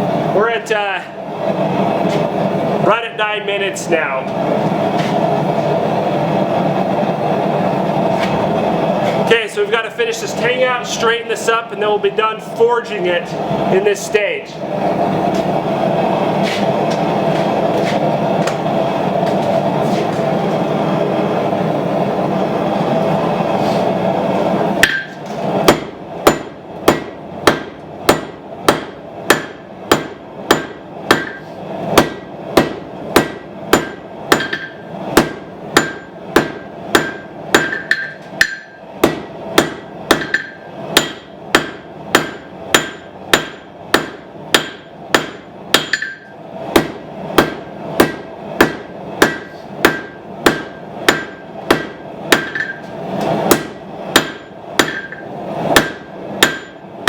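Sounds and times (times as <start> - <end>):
hammer striking steel on anvil: 24.8 - 52.9, 53.5 - 56.8.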